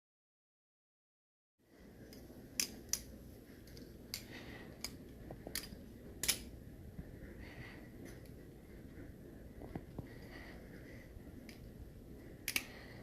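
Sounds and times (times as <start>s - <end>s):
low steady room hiss: 1.6s - 13.0s
sharp clicks: 3.7s - 6.5s, 12.4s - 12.8s.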